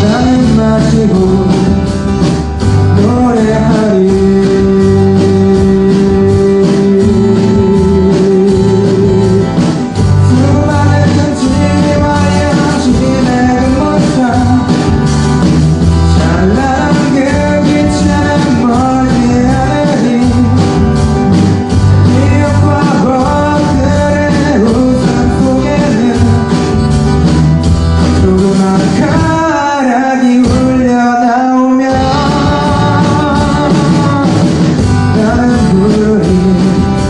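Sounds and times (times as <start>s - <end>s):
live rock band playing: 0.0s - 37.0s.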